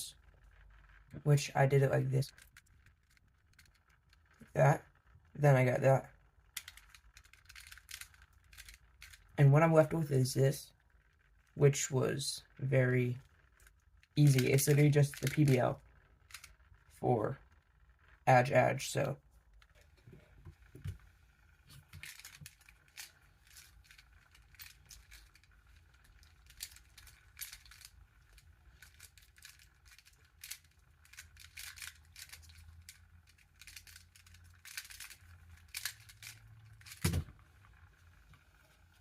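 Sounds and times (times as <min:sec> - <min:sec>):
plastic puzzle clicks and clacks: 0:06.5 - 0:09.4, 0:13.3 - 0:16.6, 0:21.8 - 0:37.4.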